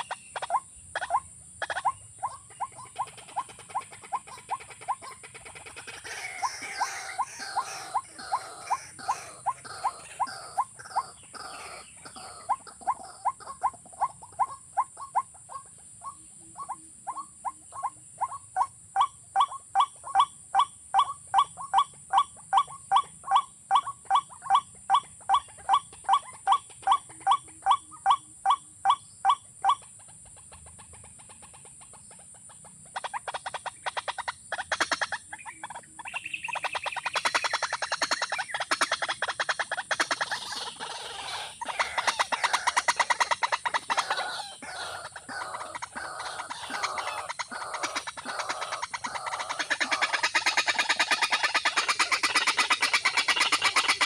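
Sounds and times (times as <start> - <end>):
sharp chattering: 0.0 - 15.6, 29.2 - 54.0.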